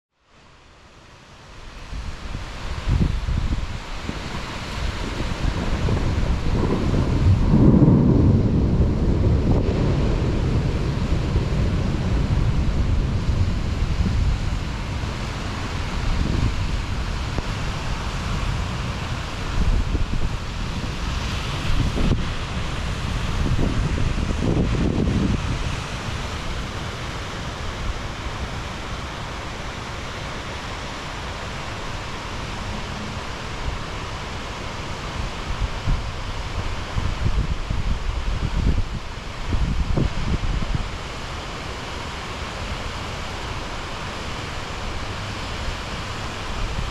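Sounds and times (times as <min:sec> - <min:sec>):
heavy rain hissing: 0:00.4 - 0:46.9
wind buffeting microphone: 0:01.8 - 0:29.5, 0:30.2 - 0:41.4.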